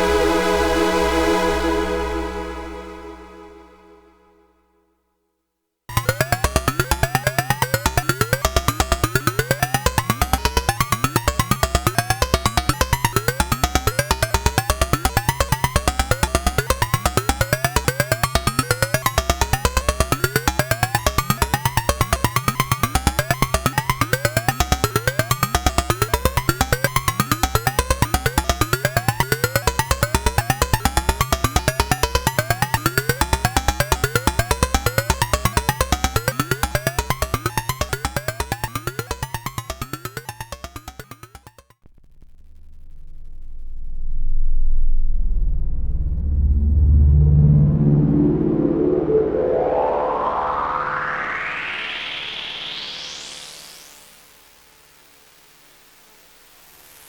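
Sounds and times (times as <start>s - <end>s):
synthesizer gliding note sequence: 0.0s - 4.2s, 5.9s - 41.7s, 46.3s - 53.6s
low bass tone: 41.9s - 51.3s.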